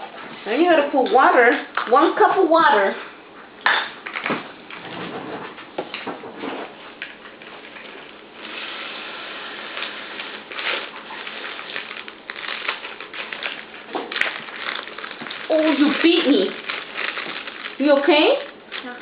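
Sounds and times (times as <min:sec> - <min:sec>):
kitchen things clicking and clattering: 0:12.7 - 0:19.0.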